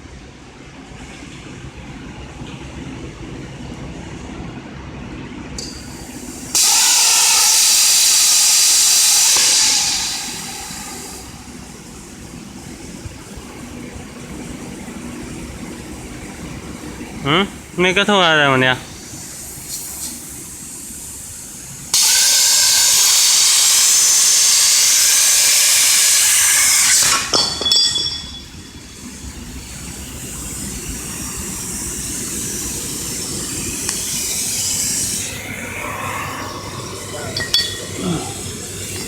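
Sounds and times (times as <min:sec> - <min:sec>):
plasma torch hissing: 0:05.6 - 0:12.4, 0:18.7 - 0:39.0
soft hissing noise: 0:18.4 - 0:39.0.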